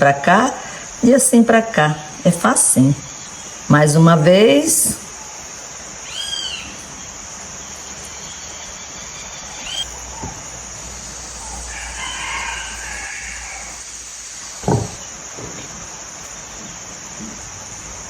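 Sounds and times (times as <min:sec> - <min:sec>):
steady high hiss: 0:00.0 - 0:18.0
chickens calling: 0:02.7 - 0:15.2
rooster crowing: 0:11.0 - 0:15.0.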